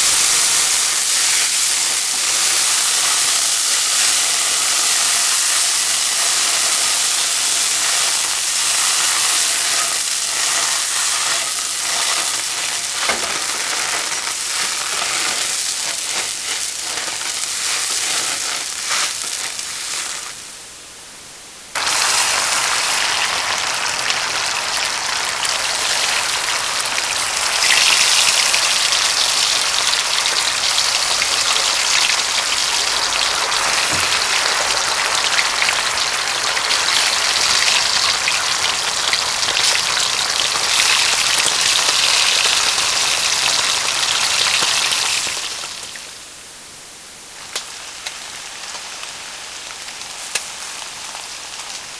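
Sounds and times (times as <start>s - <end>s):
food sizzling in hot oil: 0.0s - 20.6s, 21.7s - 46.3s, 47.3s - 51.9s
harsh sizzle: 0.0s - 51.9s.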